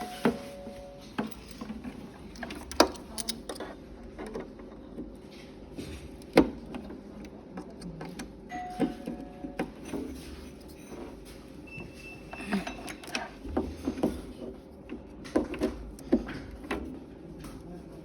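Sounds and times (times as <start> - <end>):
low background hum: 0.0 - 18.0.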